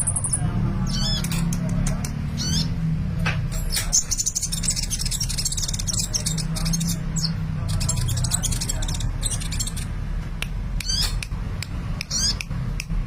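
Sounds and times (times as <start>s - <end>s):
bird twittering song: 0.0s - 2.9s, 3.5s - 10.0s, 10.8s - 11.3s, 12.0s - 12.5s.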